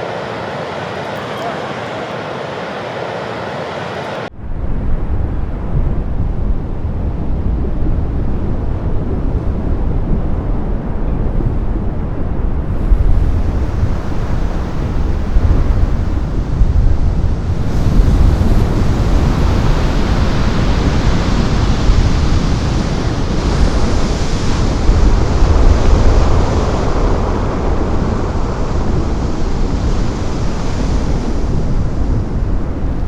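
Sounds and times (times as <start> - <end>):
ocean surf breaking: 0.0 - 4.3, 11.9 - 33.0
wind buffeting microphone: 0.0 - 33.0.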